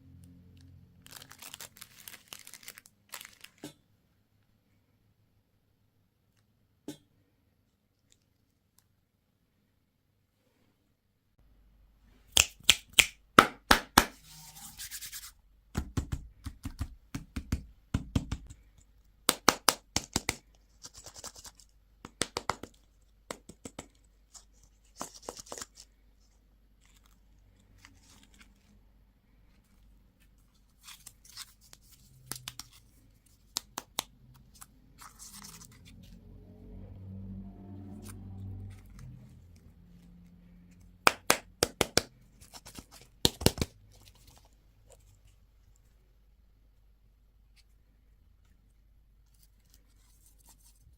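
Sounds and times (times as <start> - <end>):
plastic packaging crinkling: 1.0 - 3.6.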